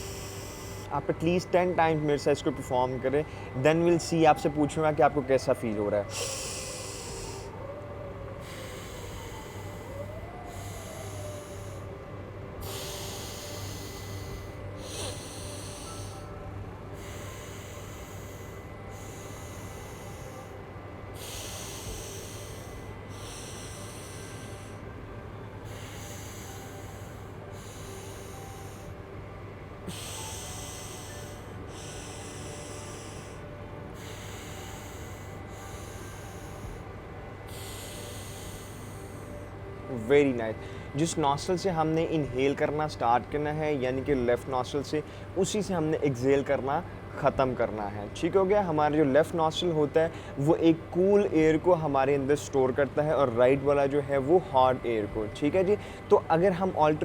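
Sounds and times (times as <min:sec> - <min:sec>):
person breathing through nostril: 0:00.0 - 0:00.9, 0:06.1 - 0:07.6, 0:08.4 - 0:12.0, 0:12.6 - 0:25.0, 0:25.6 - 0:29.1, 0:29.9 - 0:39.6
low steady hum: 0:00.0 - 0:57.0.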